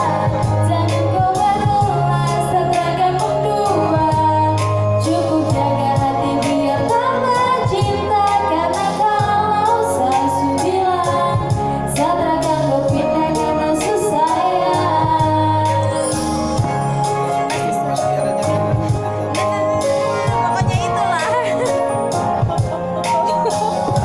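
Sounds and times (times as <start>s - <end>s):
sustained keyboard chords: 0.0s - 24.0s
woman singing pop song: 0.0s - 24.0s
steady drum beat: 16.6s - 24.0s.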